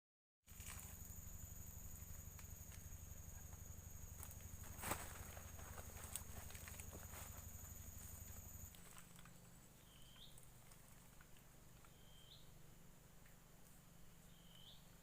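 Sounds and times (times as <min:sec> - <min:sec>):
low hum: 0:00.5 - 0:15.0
faint high steady tone: 0:11.8 - 0:12.6.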